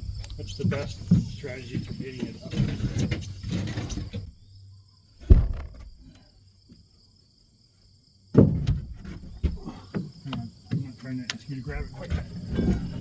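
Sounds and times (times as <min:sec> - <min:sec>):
insects trilling: 0:00.0 - 0:13.0
plywood sheet knocks and thud: 0:05.2 - 0:06.0, 0:08.3 - 0:10.9.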